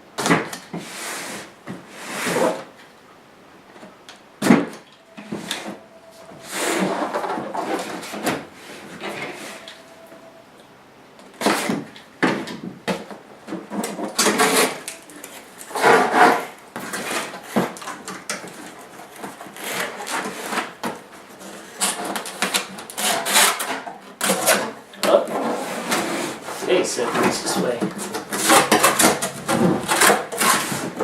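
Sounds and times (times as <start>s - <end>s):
cardboard scraping and sliding: 13.7s - 17.8s, 21.3s - 31.0s.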